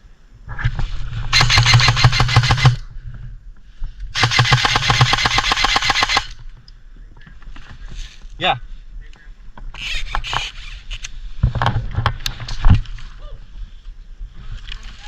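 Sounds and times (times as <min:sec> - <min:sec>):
airsoft gun full-auto bursts: 0:01.4 - 0:02.8, 0:04.2 - 0:06.4
gearbox motor whirring: 0:01.4 - 0:02.8, 0:04.2 - 0:06.3.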